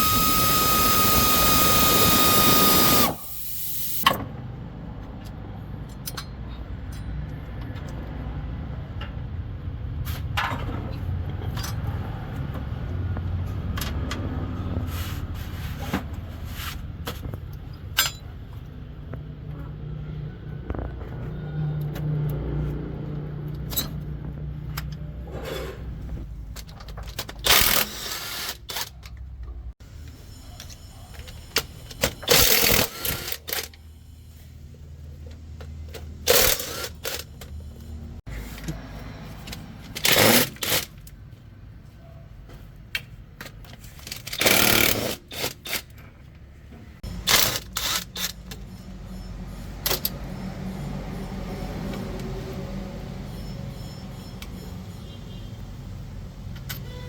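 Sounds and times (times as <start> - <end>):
pneumatic tool hissing: 0.0 - 4.0.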